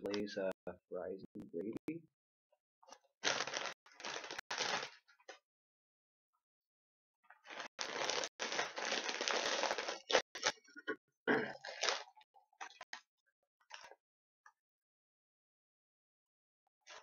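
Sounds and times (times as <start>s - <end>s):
foil chip bag crinkling: 3.2s - 5.0s, 7.4s - 10.7s, 11.6s - 12.9s, 13.7s - 14.0s.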